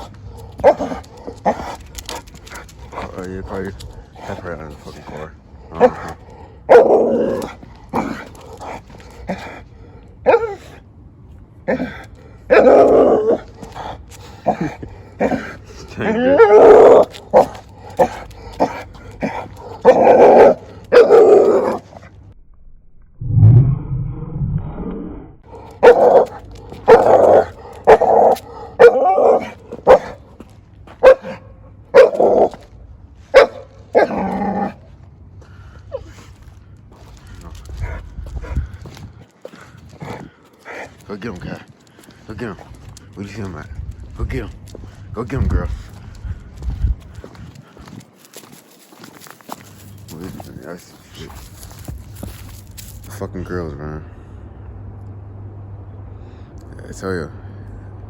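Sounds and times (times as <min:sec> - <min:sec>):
dog barking and whining: 0:00.0 - 0:03.1, 0:05.7 - 0:08.3, 0:10.2 - 0:10.8, 0:11.7 - 0:22.1, 0:25.7 - 0:30.3, 0:31.0 - 0:34.8.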